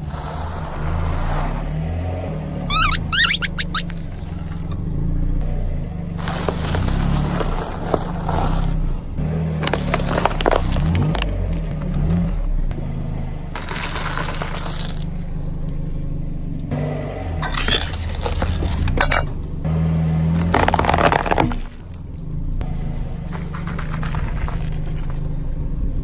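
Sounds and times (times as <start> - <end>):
car engine idling: 0.0 - 26.0
tyre crushing crunchy objects: 5.5 - 12.4, 13.5 - 22.2, 22.8 - 25.6.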